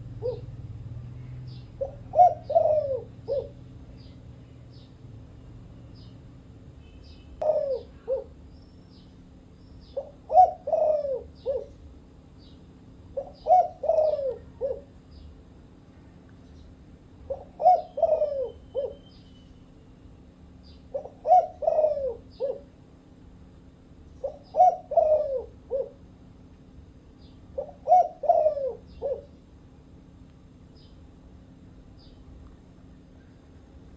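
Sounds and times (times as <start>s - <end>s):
dove cooing: 0.0s - 5.2s, 7.4s - 8.4s, 9.8s - 11.8s, 13.1s - 15.0s, 17.2s - 19.2s, 20.8s - 22.8s, 24.2s - 26.1s, 27.5s - 29.4s
small birds chirping: 0.0s - 22.8s, 27.1s - 29.4s, 30.6s - 31.1s, 31.9s - 33.6s.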